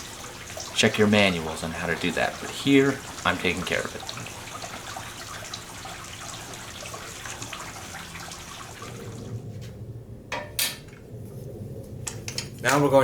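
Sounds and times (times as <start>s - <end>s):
water running from a tap: 0.0s - 9.5s.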